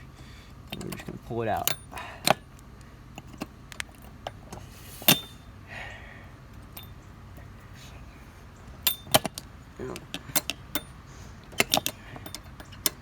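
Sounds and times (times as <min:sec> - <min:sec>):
light metallic clicks: 0:00.6 - 0:04.4, 0:08.8 - 0:13.0
metal clink: 0:05.1 - 0:05.4, 0:06.6 - 0:07.0, 0:08.8 - 0:09.4.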